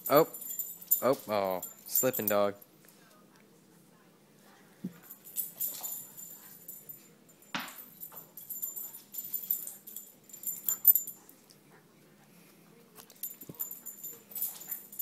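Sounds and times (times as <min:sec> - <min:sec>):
collar tags jingling: 0:00.0 - 0:02.7, 0:04.9 - 0:11.5, 0:13.0 - 0:15.0.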